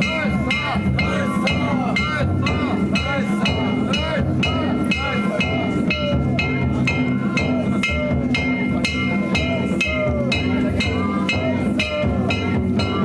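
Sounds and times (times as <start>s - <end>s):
metal gongs beaten: 0.0s - 13.0s
taiko drum beating: 0.0s - 13.0s.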